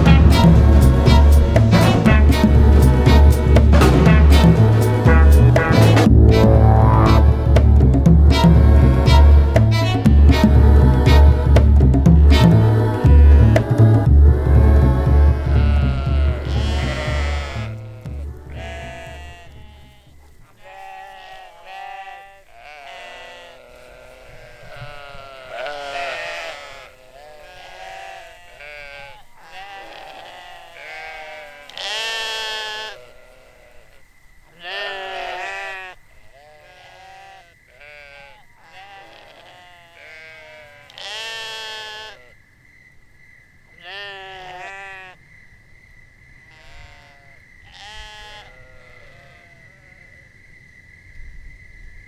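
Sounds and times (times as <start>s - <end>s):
music: 0.0s - 19.6s
sheep or goats bleating: 15.3s - 42.3s, 43.8s - 45.2s, 46.5s - 49.6s.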